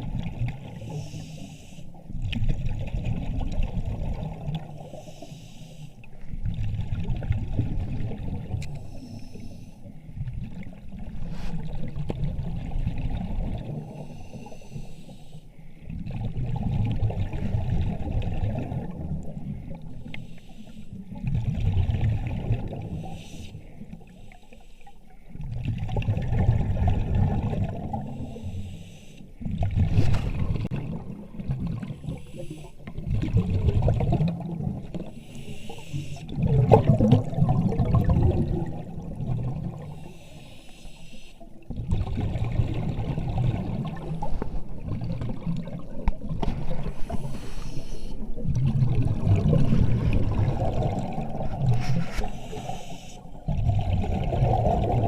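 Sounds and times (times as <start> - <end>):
exhaled bubbles gurgling: 0.0 - 24.3, 25.1 - 55.0
diver breathing through mask: 0.8 - 2.0, 4.8 - 6.0, 8.8 - 10.2, 13.8 - 15.9, 19.6 - 21.0, 22.9 - 25.2, 28.0 - 29.4, 31.9 - 33.0, 35.0 - 36.4, 39.8 - 41.5, 46.7 - 48.4, 51.7 - 53.6.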